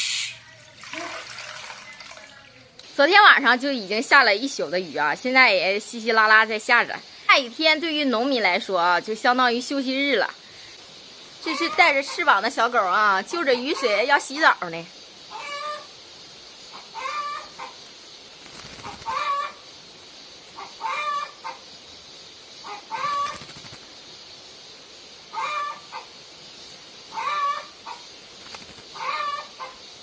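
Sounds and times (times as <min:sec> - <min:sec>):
faint steady hiss: 0:00.0 - 0:30.0
fowl calling: 0:15.3 - 0:15.9, 0:16.7 - 0:17.8, 0:18.8 - 0:19.6, 0:20.6 - 0:21.6, 0:22.6 - 0:23.4, 0:25.3 - 0:26.1, 0:27.1 - 0:28.0, 0:29.0 - 0:29.8.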